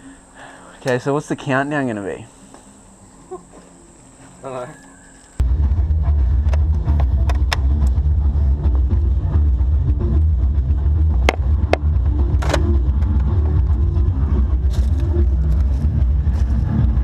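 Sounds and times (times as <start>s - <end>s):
heavy low rumble: 5.4s - 17.0s.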